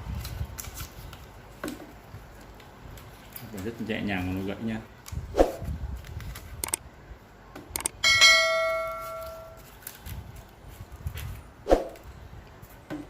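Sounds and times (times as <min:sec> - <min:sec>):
ringing metallic strike: 0:08.0 - 0:09.6.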